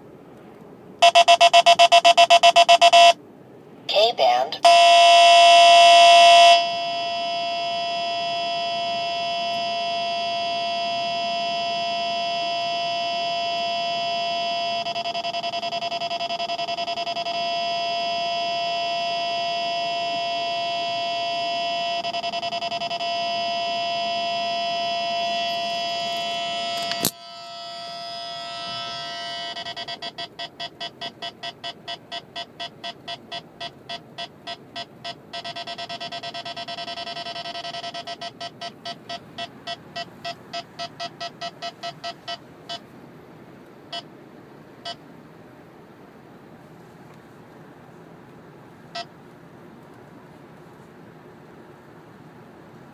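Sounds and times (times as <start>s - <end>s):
electronic alert tone: 1.0s - 3.2s, 4.0s - 21.2s, 21.8s - 42.4s
fast electronic beeping: 1.0s - 3.2s, 4.6s - 42.8s
sharp click: 26.8s - 27.2s.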